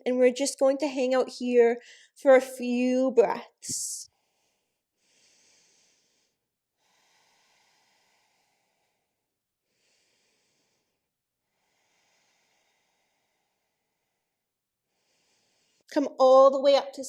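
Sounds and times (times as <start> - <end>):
faint slow breathing: 4.1 - 15.9.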